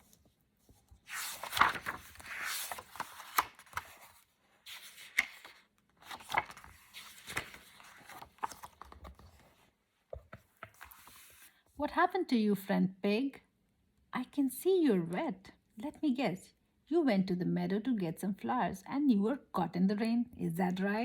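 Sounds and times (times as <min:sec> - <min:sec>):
book pages rustling: 0:00.0 - 0:11.7.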